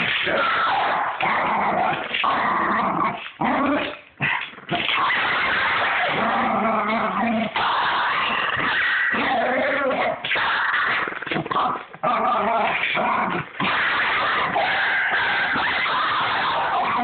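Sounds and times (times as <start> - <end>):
dog growling: 0.0 - 17.0.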